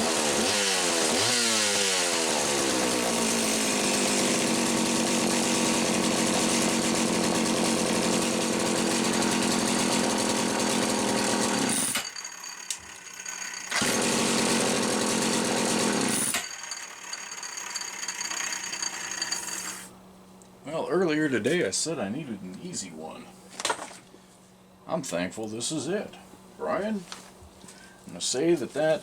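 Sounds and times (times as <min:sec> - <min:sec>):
chainsaw engine revving: 0:00.0 - 0:19.8.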